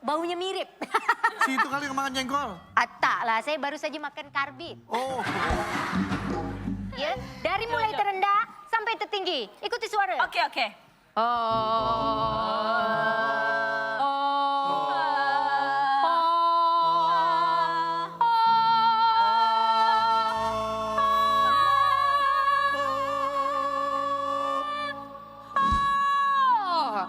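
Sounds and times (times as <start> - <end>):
person singing vocal exercise: 11.2 - 17.3.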